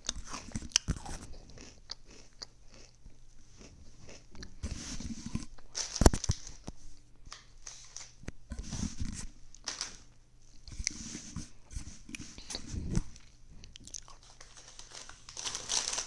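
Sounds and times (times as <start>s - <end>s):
chewing crunchy food: 0.0s - 7.1s, 12.1s - 16.0s.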